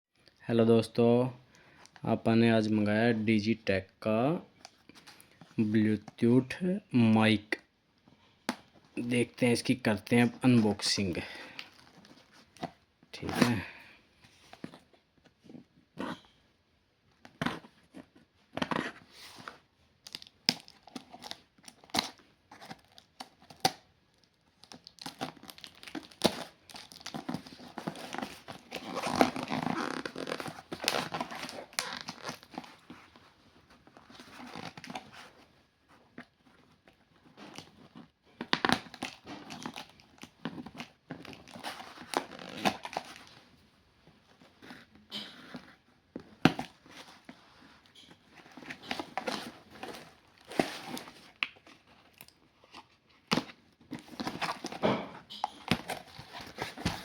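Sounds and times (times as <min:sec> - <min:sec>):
packaging tearing and crinkling: 0:20.0 - 0:33.2, 0:36.5 - 0:43.4, 0:46.2 - 0:57.0.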